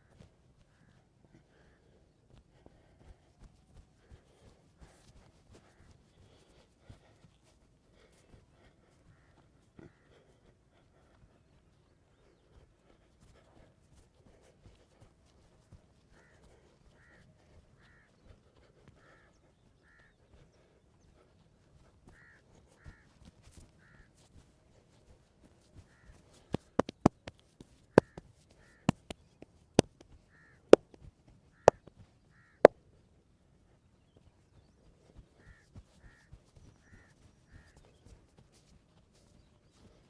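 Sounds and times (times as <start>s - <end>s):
crows cawing: 8.7s - 10.4s, 16.0s - 21.3s, 22.1s - 24.4s, 25.7s - 30.9s, 31.5s - 32.9s, 35.3s - 38.2s.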